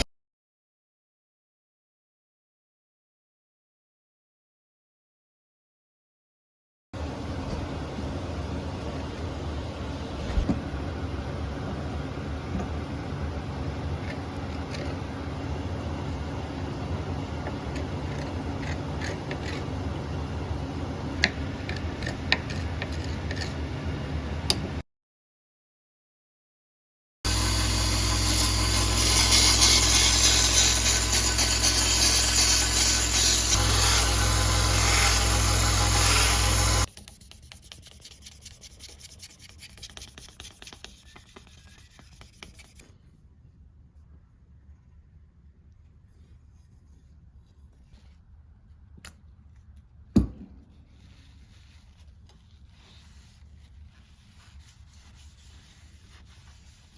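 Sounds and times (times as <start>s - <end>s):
low mechanical hum: 7.0s - 24.8s, 27.3s - 56.9s
knife blade scraping on abrasive: 18.0s - 19.7s, 27.3s - 42.8s.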